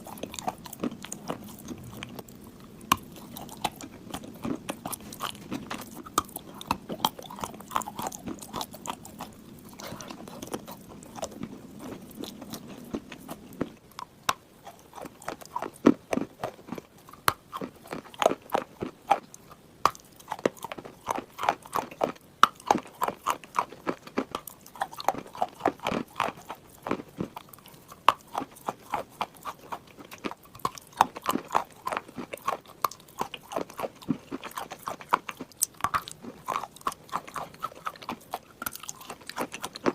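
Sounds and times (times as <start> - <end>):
crisp chewing crunches: 0.0 - 39.9.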